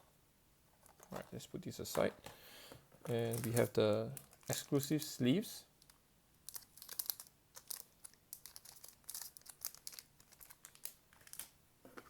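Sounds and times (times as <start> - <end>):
plastic packaging crinkling: 3.1 - 4.9, 5.8 - 11.6.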